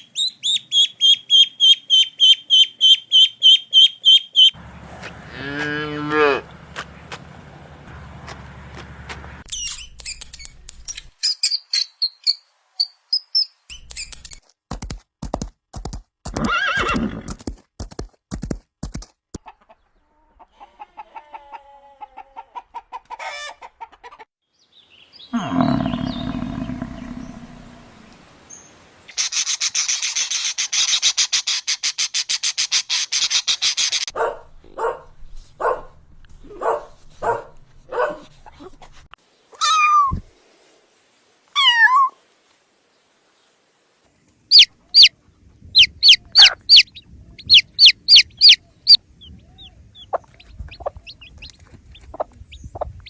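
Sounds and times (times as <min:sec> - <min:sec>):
chirps: 0:00.0 - 0:04.6, 0:25.2 - 0:28.2, 0:44.5 - 0:45.1, 0:45.8 - 0:53.0
farm animal calls: 0:00.0 - 0:06.6, 0:25.3 - 0:28.2, 0:44.5 - 0:45.1, 0:45.8 - 0:51.5
horse neighing: 0:25.3 - 0:28.1.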